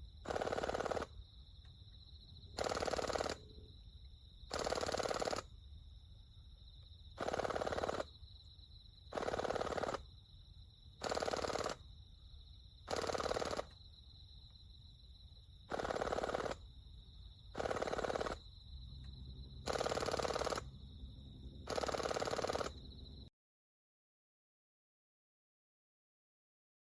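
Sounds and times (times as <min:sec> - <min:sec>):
airsoft gun full-auto bursts: 0:00.2 - 0:01.2, 0:02.6 - 0:03.4, 0:04.5 - 0:05.5, 0:07.2 - 0:08.1, 0:09.1 - 0:10.1, 0:11.0 - 0:11.8, 0:12.9 - 0:13.8, 0:15.7 - 0:16.6, 0:17.5 - 0:18.4, 0:19.6 - 0:20.7, 0:21.7 - 0:22.8.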